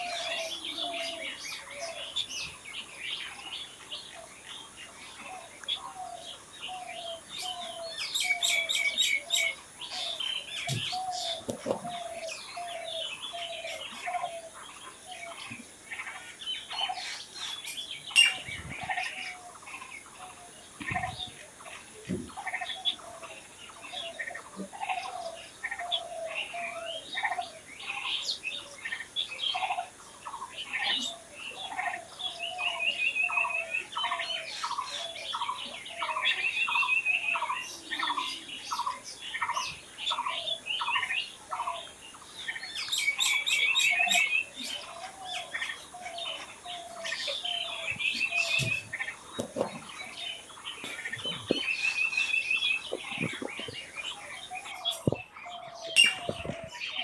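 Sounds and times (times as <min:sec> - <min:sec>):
birds chirping and singing: 0:00.0 - 0:57.0
bird trilling: 0:50.4 - 0:57.0.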